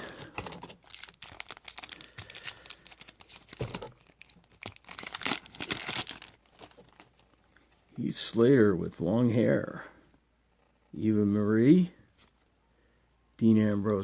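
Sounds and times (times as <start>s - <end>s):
cards rustling and clicking: 0.0s - 7.3s
foil wrapper crinkling and tearing: 0.0s - 7.3s.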